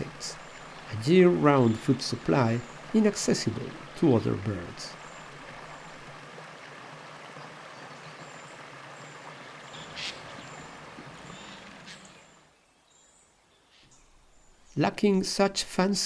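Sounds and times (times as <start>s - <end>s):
stream water rushing: 0.0s - 12.6s.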